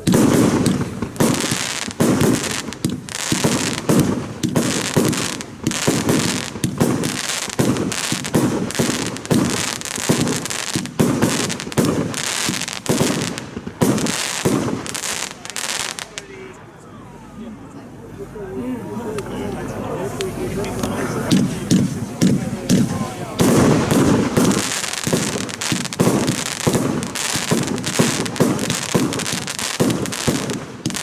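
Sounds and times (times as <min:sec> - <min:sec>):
firework launches and bursts: 0:00.0 - 0:16.2, 0:21.3 - 0:31.0
firework crackle: 0:00.0 - 0:16.5, 0:20.2 - 0:31.0.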